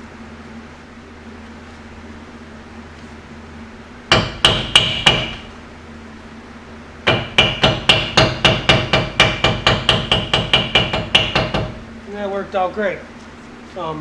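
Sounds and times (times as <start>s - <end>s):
hammer striking metal: 4.1s - 5.5s, 7.0s - 11.8s.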